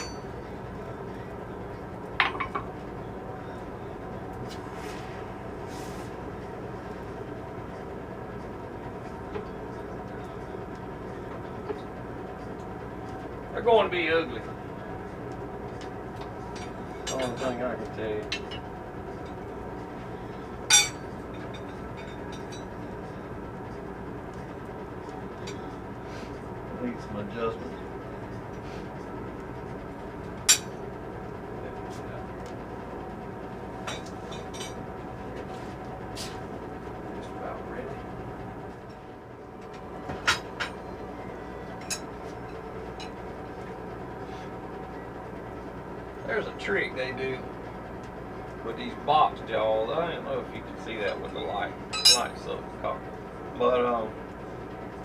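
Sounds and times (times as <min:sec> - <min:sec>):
steel clinking on steel: 0:00.0 - 0:00.3, 0:20.7 - 0:21.0, 0:51.9 - 0:52.3
faint hum: 0:00.0 - 0:55.0
forge fire roaring: 0:00.4 - 0:55.0.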